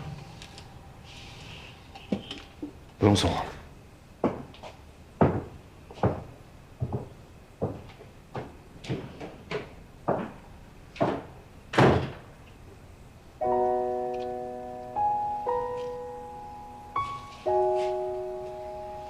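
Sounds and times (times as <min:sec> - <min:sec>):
footsteps on a hard floor: 0:04.2 - 0:09.3, 0:17.0 - 0:19.0
soft piano music: 0:13.4 - 0:19.0.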